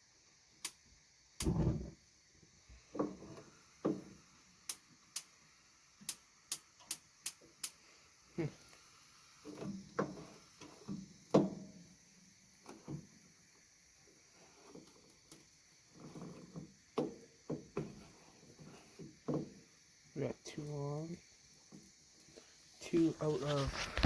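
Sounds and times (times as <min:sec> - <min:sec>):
dull knocks of handling grill: 0:01.4 - 0:01.9, 0:10.9 - 0:11.7, 0:16.0 - 0:19.6.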